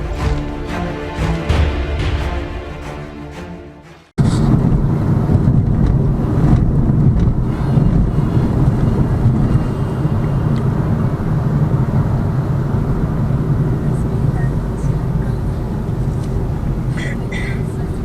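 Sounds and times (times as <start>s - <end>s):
car engine rumble: 4.2s - 18.0s
tyre road noise: 4.2s - 18.0s.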